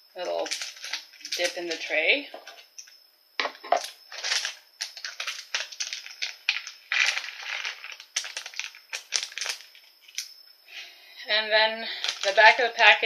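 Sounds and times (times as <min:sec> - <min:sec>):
candy beads rattling into plastic tray: 0:04.1 - 0:10.2, 0:12.0 - 0:12.6.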